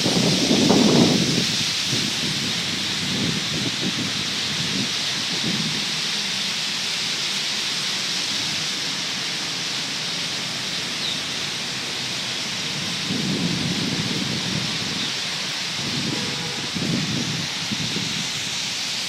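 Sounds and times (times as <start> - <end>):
wind gusts buffeting microphone: 0.0 - 6.3, 12.5 - 19.0
wind hiss on microphone: 0.0 - 19.0.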